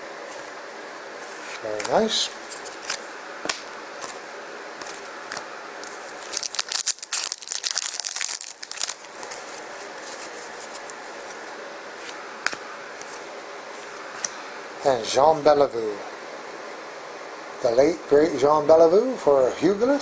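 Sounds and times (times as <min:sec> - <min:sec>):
cards tapping: 0:01.8 - 0:02.0
plastic wrapper crinkling and tearing: 0:05.8 - 0:11.4.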